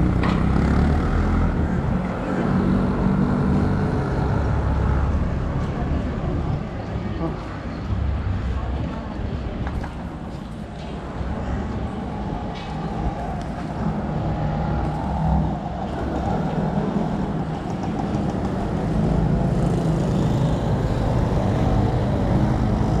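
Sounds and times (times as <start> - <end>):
vehicle engines rumbling: 0.0 - 23.0.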